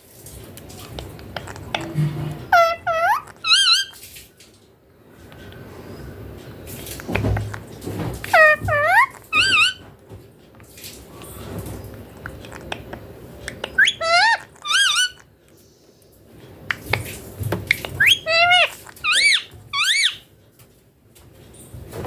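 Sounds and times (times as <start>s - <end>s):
parrot whistled calls: 2.5s - 4.0s, 8.3s - 9.8s, 13.5s - 15.2s, 17.7s - 20.3s.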